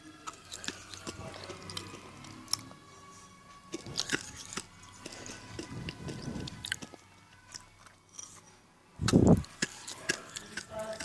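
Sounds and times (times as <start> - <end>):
crunching and chewing food: 0.0 - 11.0.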